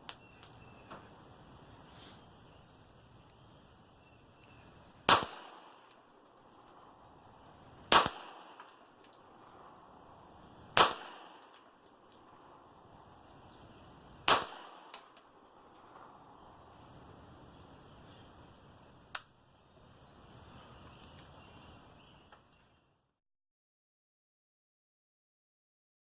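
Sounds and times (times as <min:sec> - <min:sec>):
faint clinks: 0:00.0 - 0:01.2, 0:05.6 - 0:07.5, 0:08.4 - 0:09.5, 0:11.4 - 0:13.5
gunshots: 0:05.1 - 0:05.8, 0:07.9 - 0:08.6, 0:10.7 - 0:11.6, 0:14.2 - 0:15.0.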